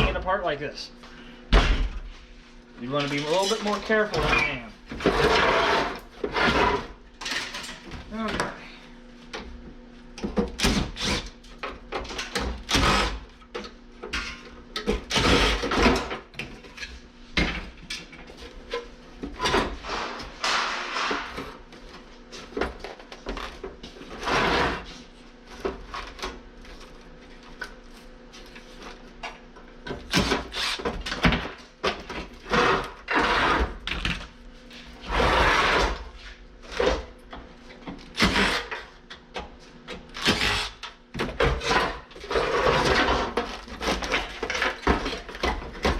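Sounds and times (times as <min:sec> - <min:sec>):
metal parts clanking and scraping: 0:02.9 - 0:07.8.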